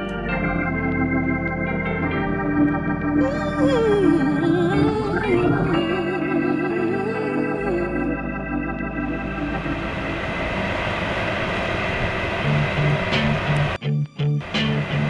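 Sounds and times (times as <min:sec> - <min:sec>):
wavering melody line: 0:00.0 - 0:11.1
organ chords: 0:00.0 - 0:15.0.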